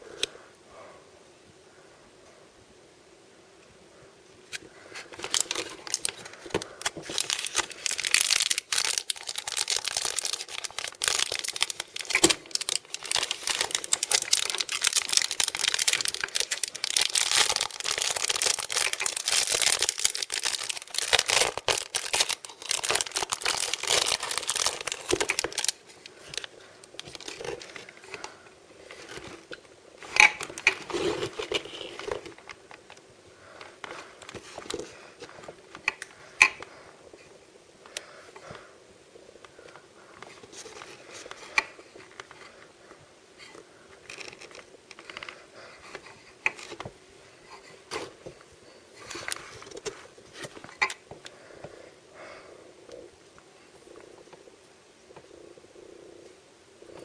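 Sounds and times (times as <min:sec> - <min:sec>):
plastic packaging crinkling and tearing: 0:04.9 - 0:32.8, 0:44.0 - 0:46.9.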